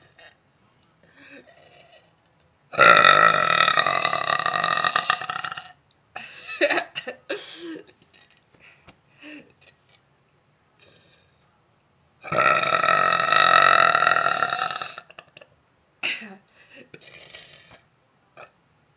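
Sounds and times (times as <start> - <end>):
woman burping: 12.3 - 17.8.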